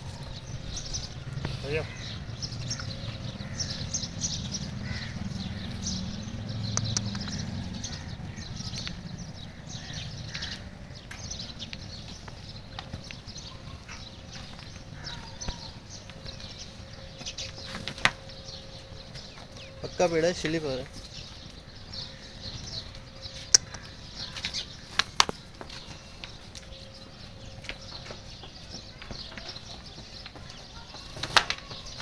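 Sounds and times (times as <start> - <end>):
crows cawing: 0.0 - 12.4, 13.1 - 18.6, 21.8 - 26.3
sharp clicks: 6.6 - 7.6.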